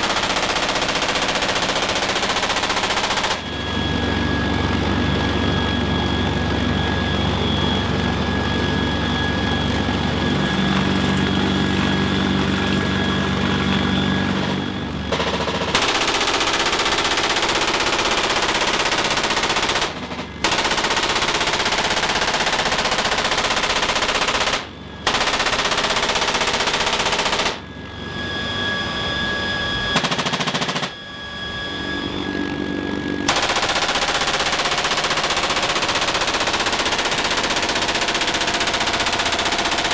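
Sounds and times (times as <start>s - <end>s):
machine gun firing bursts: 0.0s - 3.4s, 15.1s - 27.6s, 30.0s - 31.0s, 33.3s - 39.9s
helicopter engine whine and rotor: 0.0s - 39.9s.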